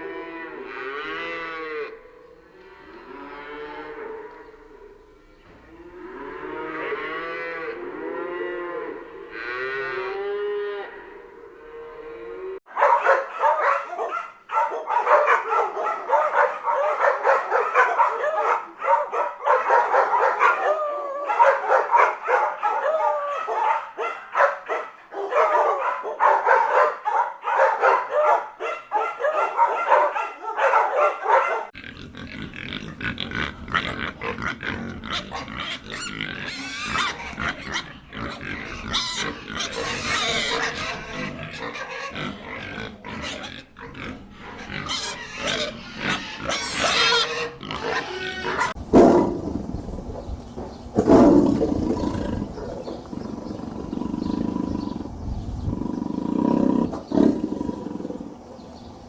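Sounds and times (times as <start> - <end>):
cattle mooing: 0.0 - 5.0, 5.6 - 12.6, 31.8 - 48.8
low rough animal sound: 31.8 - 48.8.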